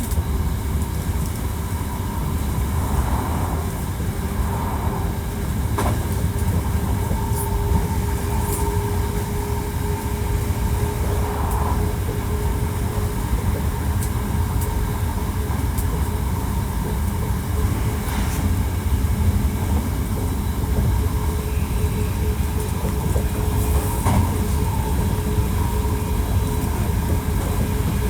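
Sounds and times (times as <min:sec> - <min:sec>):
steady train tone: 0:00.0 - 0:28.0
train wheels rumbling on rail: 0:00.0 - 0:28.0.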